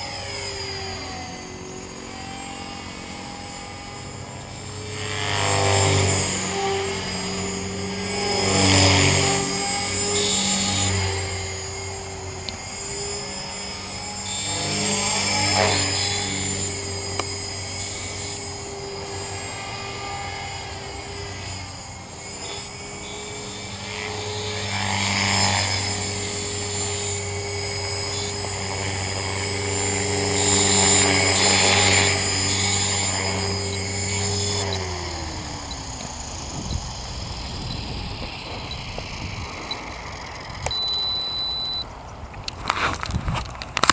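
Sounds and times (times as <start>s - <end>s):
rc helicopter rotor whine: 0.0s - 43.9s
high bearing squeal: 39.6s - 41.9s.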